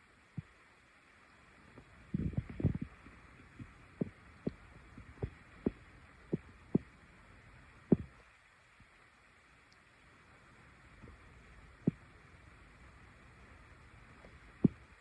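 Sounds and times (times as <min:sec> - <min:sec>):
low muffled thumps: 0:02.2 - 0:02.9, 0:07.9 - 0:08.2.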